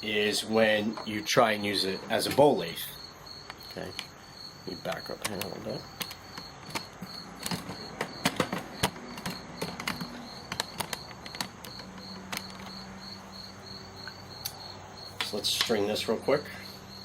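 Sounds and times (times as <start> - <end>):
cricket chirping: 0.0 - 17.0
gear clicking and knocking: 4.9 - 12.9.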